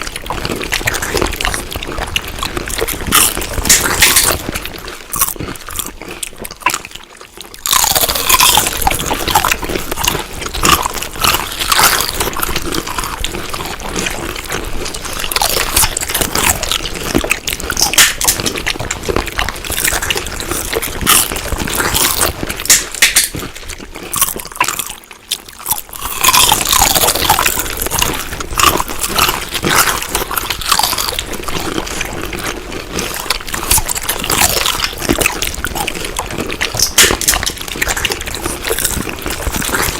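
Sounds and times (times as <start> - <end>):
wet chewing and crunching: 0.0 - 39.9.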